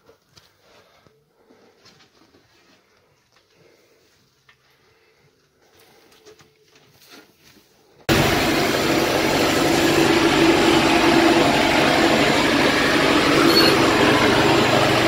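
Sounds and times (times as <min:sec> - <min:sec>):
travel noise: 0:08.1 - 0:15.0
vehicle engine running: 0:08.1 - 0:15.0.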